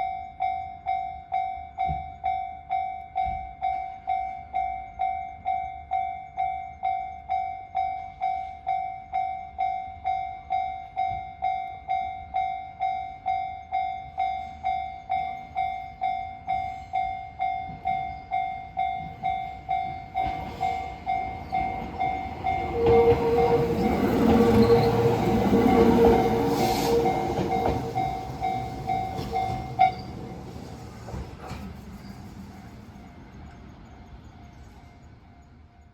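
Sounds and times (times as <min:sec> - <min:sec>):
approaching train noise: 0:09.9 - 0:35.9.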